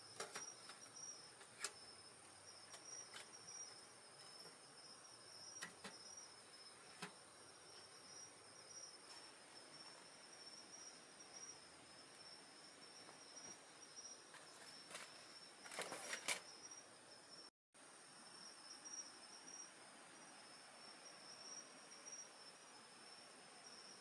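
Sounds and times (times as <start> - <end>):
night insects trilling: 0.0 - 24.0.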